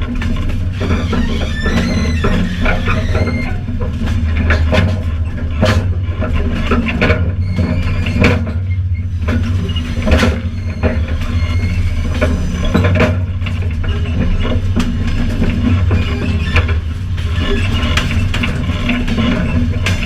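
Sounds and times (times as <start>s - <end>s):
train knocks and rattles: 0.0s - 20.0s
train rumbling: 0.0s - 20.0s
faint high squeals: 0.9s - 3.6s, 9.6s - 12.8s.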